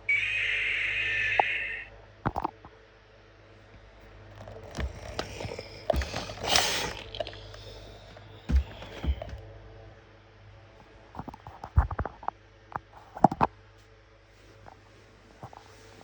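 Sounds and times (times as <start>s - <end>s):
steady low hum: 0.0s - 16.0s
light knocks and clicks: 8.4s - 9.4s.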